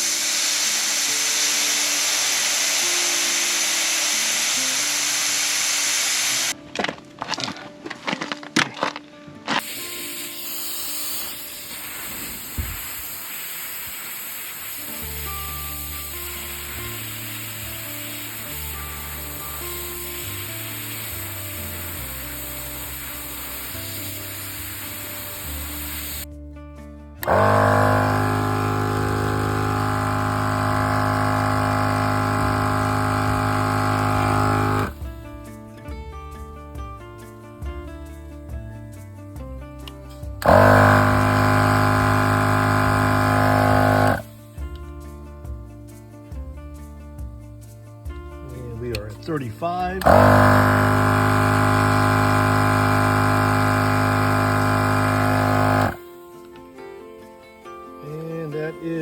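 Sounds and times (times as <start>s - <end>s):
air compressor running: 0.0s - 6.6s, 9.6s - 26.3s, 27.2s - 35.2s, 40.4s - 44.6s, 49.8s - 56.2s.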